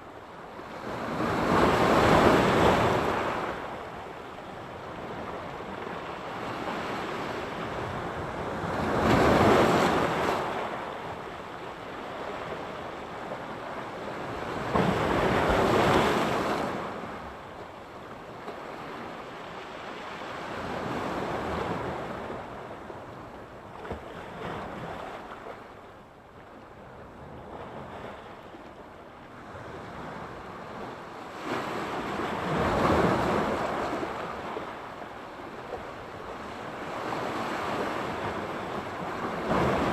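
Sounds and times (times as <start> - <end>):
waves breaking on shore: 31.2 - 39.9.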